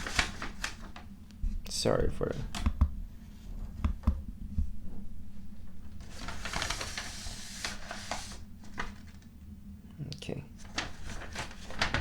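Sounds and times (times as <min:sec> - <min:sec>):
packaging crinkly rustling: 0:00.0 - 0:01.0, 0:05.8 - 0:09.3, 0:10.6 - 0:12.0.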